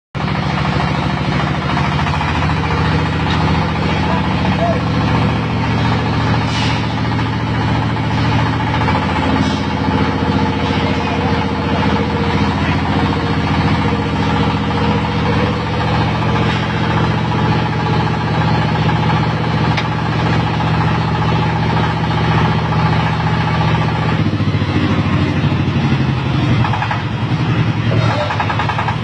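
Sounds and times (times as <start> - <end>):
grinder mill mechanical drone: 0.2 - 29.0.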